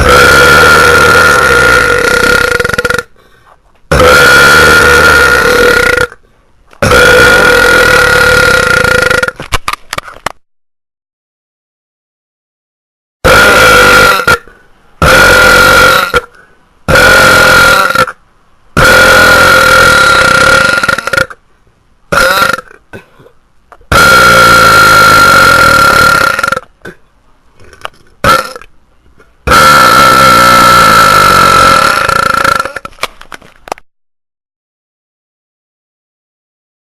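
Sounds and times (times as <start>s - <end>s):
person belching loudly: 0.0s - 3.2s, 3.9s - 6.2s, 6.8s - 9.5s, 13.2s - 18.2s, 18.8s - 21.4s, 22.1s - 23.0s, 23.9s - 27.0s, 27.6s - 28.7s, 29.4s - 33.0s.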